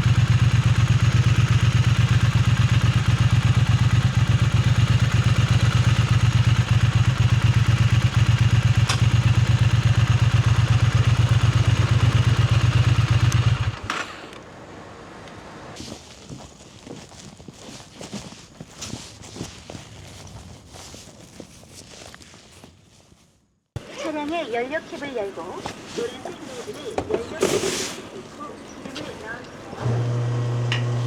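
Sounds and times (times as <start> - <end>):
motorcycle engine running at low revs: 0.0 - 15.8, 28.4 - 31.0.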